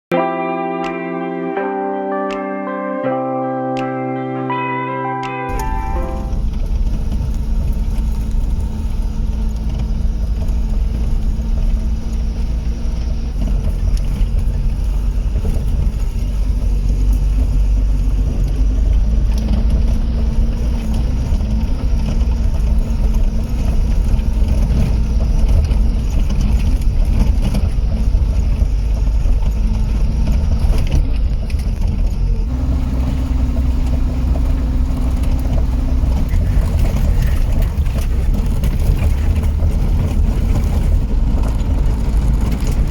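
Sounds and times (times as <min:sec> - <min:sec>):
road and wind noise: 0:05.5 - 0:42.9
vehicle engine hum: 0:05.5 - 0:42.9.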